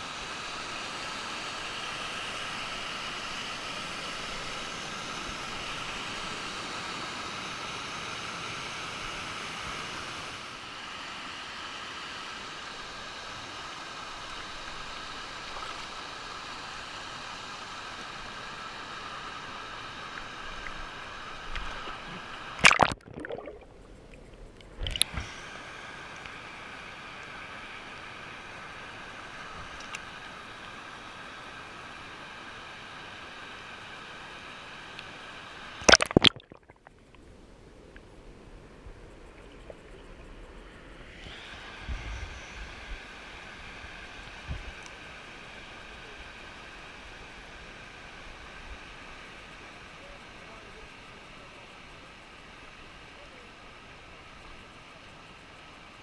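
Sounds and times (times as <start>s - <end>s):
loud water splashes: 22.5s - 23.7s, 35.8s - 36.9s.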